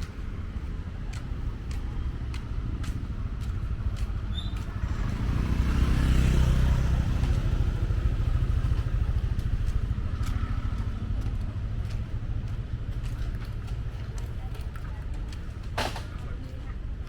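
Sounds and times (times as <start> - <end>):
steady low rumble: 0.0 - 5.4, 6.6 - 17.0
vehicle engine passing: 2.3 - 13.6.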